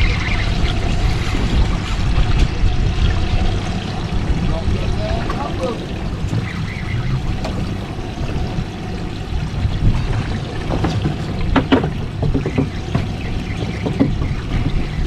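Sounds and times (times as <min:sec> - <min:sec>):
low steady rumble: 0:00.0 - 0:15.0
water sloshing and trickling: 0:00.0 - 0:15.0
short knocks: 0:05.2 - 0:08.8, 0:10.6 - 0:15.0.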